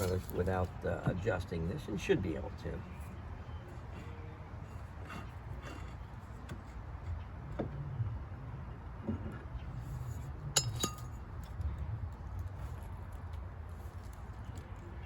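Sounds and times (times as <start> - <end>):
low steady hum: 0.0 - 15.0
light metallic clinks and taps: 10.6 - 11.6.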